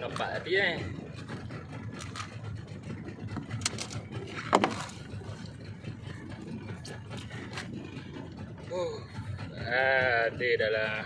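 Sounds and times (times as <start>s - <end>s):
boat engine running: 0.0s - 11.0s
knocks on boat hull: 4.5s - 4.8s.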